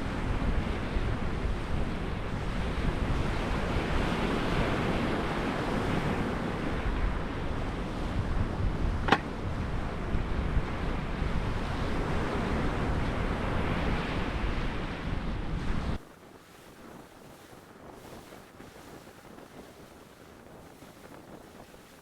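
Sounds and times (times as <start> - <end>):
wind buffeting microphone: 0.0 - 22.0
surf breaking on beach: 15.7 - 22.0.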